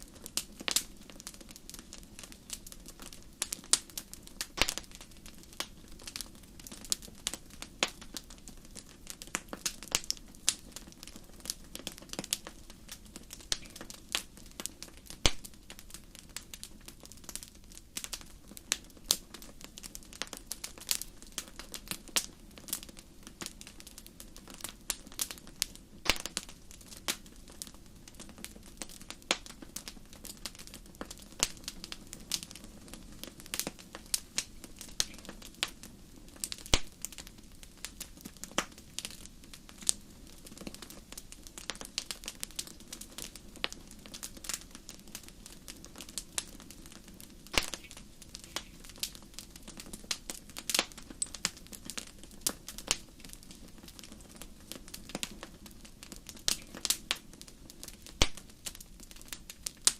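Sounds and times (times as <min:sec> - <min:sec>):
wood fire crackling: 0:00.0 - 0:59.9.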